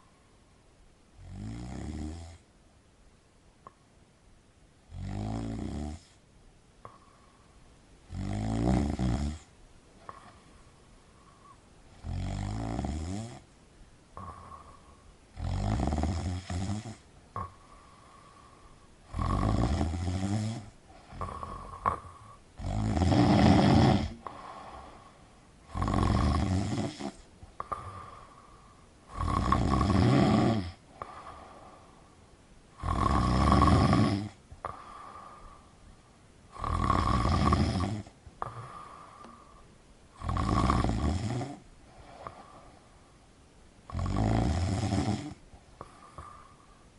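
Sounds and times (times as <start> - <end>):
person snoring: 4.9 - 6.2, 8.1 - 10.4, 11.4 - 13.4, 14.2 - 31.8, 32.7 - 35.7, 36.5 - 39.6, 40.2 - 42.8, 43.9 - 46.6.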